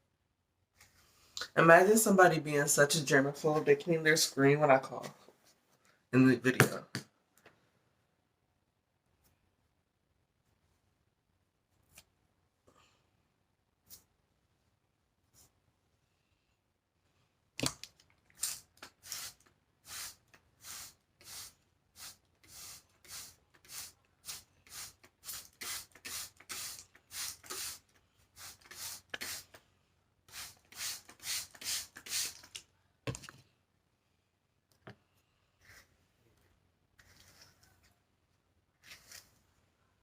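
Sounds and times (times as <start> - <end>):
spray bottle spritzing: 18.4 - 29.6, 30.3 - 32.6.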